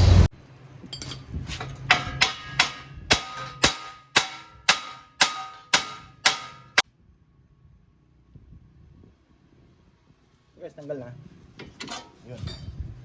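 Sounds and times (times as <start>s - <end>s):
hammer clanging on metal: 0.9s - 6.8s.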